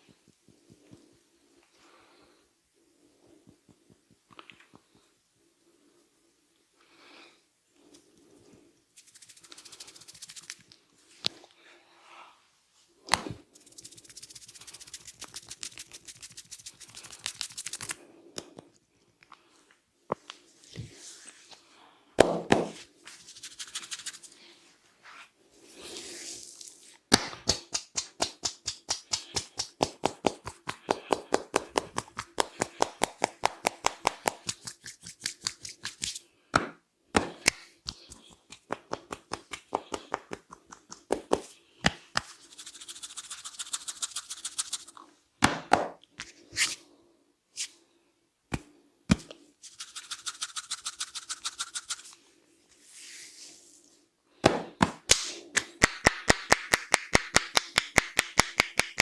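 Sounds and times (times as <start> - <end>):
hands rubbing head: 9.0 - 10.7, 13.5 - 18.0, 22.6 - 24.5, 27.4 - 36.3, 37.4 - 45.0, 49.6 - 52.2
hands slapping head: 22.2 - 22.8, 27.1 - 42.4, 45.4 - 46.3, 54.4 - 59.0.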